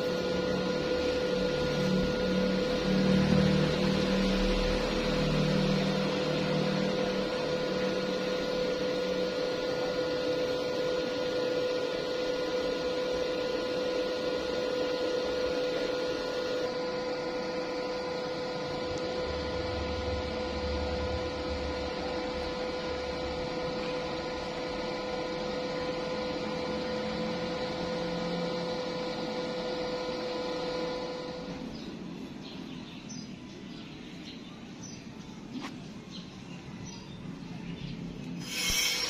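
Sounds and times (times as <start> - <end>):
low buzz: 0.0 - 32.7, 38.1 - 39.0
electrical hum: 0.0 - 39.0
even hiss: 38.4 - 39.0.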